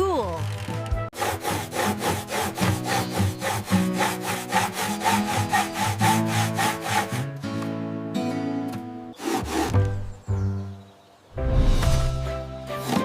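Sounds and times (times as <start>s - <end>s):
background music: 0.0s - 13.0s
saw cutting wood: 0.4s - 7.4s, 9.2s - 10.1s.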